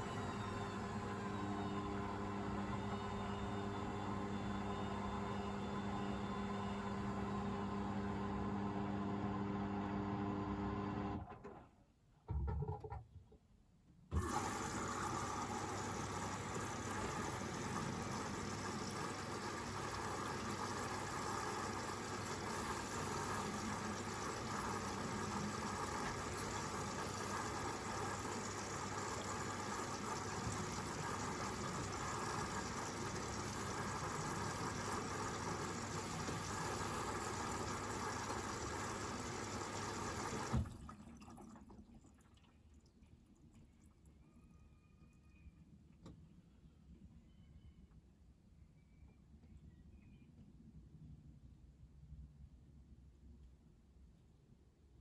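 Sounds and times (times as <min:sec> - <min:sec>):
washing machine motor humming: 0:00.0 - 0:11.3, 0:14.1 - 0:41.5.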